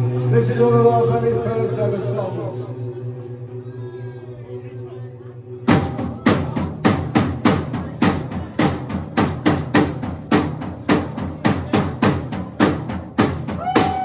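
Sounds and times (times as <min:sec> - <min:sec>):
drum kit beat: 0:05.7 - 0:14.0.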